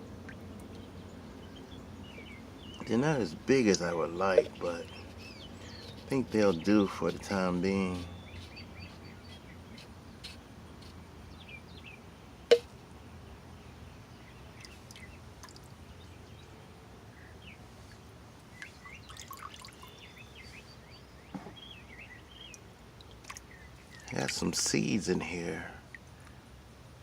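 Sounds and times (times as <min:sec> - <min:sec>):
birds chirping: 0:00.0 - 0:26.4
water dripping and splashing: 0:14.6 - 0:15.7, 0:18.6 - 0:20.0, 0:22.5 - 0:24.5.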